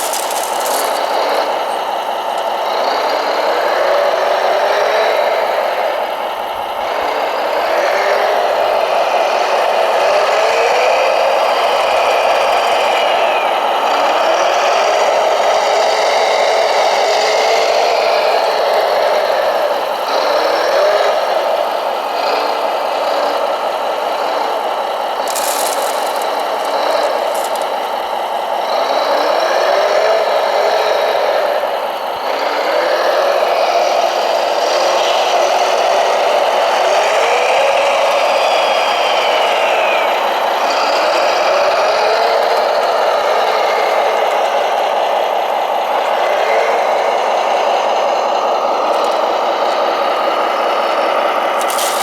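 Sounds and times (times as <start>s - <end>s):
fast clicking: 0.0s - 1.7s, 25.2s - 28.2s
small electric motors whirring: 0.0s - 1.8s, 25.2s - 28.1s, 51.5s - 52.0s.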